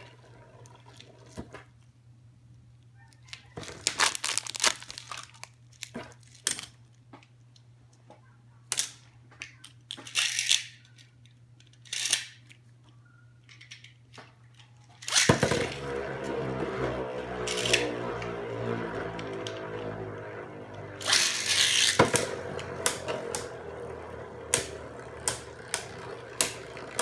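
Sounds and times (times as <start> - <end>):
packaging tearing and crinkling: 3.6 - 6.6
music: 15.4 - 27.0
steady low hum: 15.4 - 27.0.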